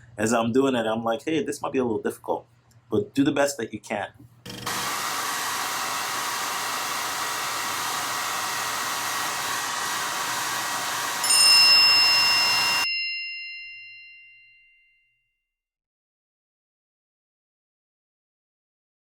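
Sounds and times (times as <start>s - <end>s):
hair dryer blowing: 4.5s - 12.9s
bright ringing ding: 11.2s - 15.2s.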